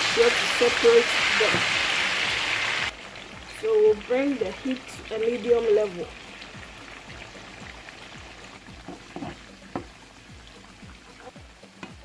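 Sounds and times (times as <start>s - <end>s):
plantain frying in hot oil: 0.0s - 11.8s
faint music with thudding beat: 2.8s - 12.0s.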